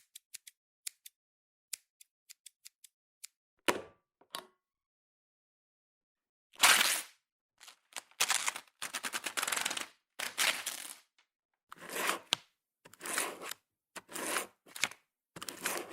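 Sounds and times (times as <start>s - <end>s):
stationery scraping and rustling: 11.8s - 14.7s.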